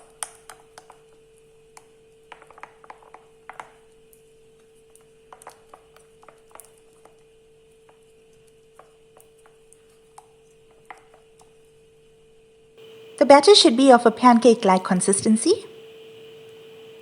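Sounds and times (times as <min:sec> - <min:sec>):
faint steady hum: 0:03.6 - 0:17.0.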